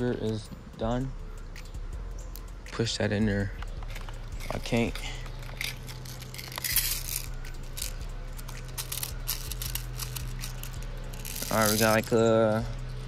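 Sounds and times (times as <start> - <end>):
plastic clicks and rattling of bbs: 3.6 - 12.0
scraping rustles: 3.8 - 12.2.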